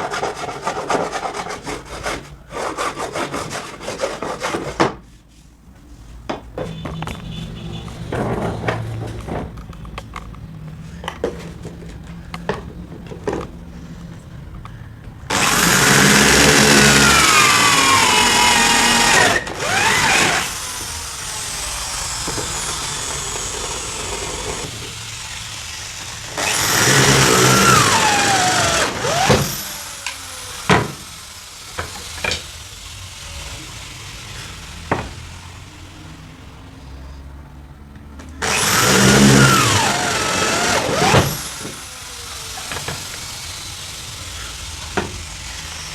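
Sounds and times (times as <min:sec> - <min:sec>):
power tool motor whine: 0:15.3 - 0:36.5, 0:38.4 - 0:45.9.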